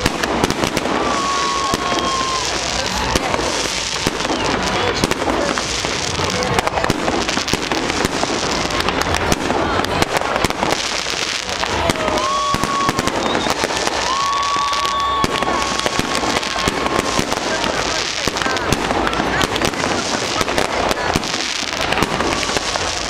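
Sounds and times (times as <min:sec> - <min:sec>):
whistling firework tones: 0:00.0 - 0:05.0, 0:11.2 - 0:19.4
fireworks bangs and crackling: 0:00.0 - 0:23.0.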